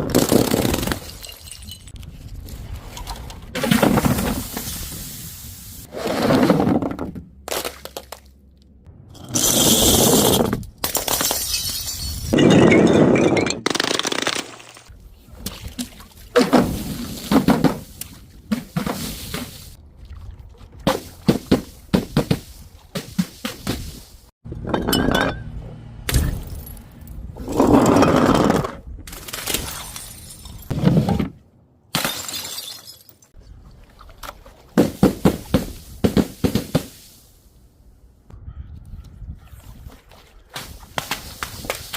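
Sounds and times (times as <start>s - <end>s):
glass bottles smashing: 0.3s - 2.0s, 10.8s - 14.9s, 24.6s - 25.5s, 29.5s - 30.7s, 31.9s - 33.4s.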